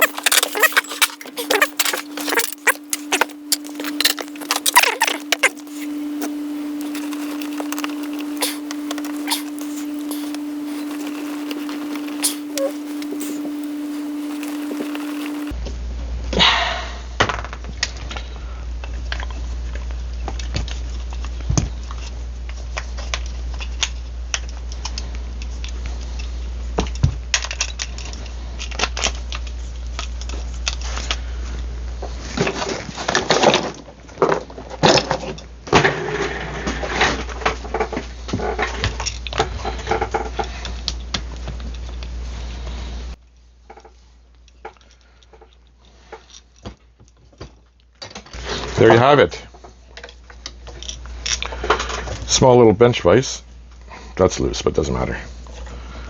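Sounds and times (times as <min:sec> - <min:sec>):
steady low hum: 0:00.0 - 0:15.6.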